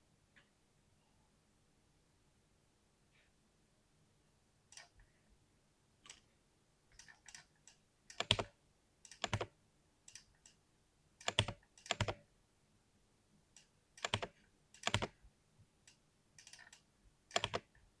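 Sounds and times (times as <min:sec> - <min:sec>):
mechanical keyboard typing: 0:08.1 - 0:09.5, 0:11.2 - 0:12.2, 0:14.0 - 0:15.2, 0:16.4 - 0:17.7.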